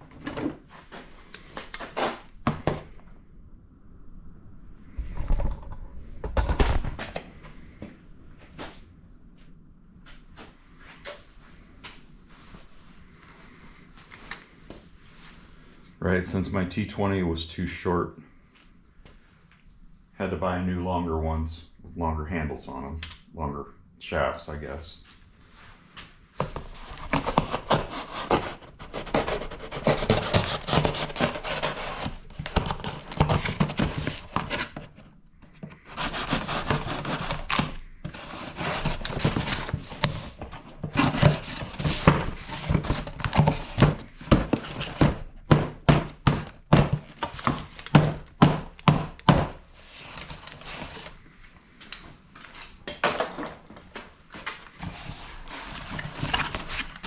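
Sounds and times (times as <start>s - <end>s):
hands rubbing and scraping: 26.4s - 45.1s.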